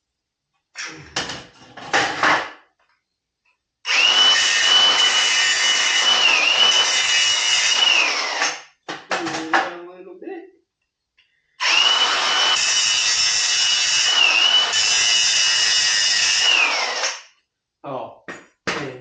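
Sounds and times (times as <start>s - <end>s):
high-speed power tool whining: 3.9s - 8.6s, 11.6s - 17.2s.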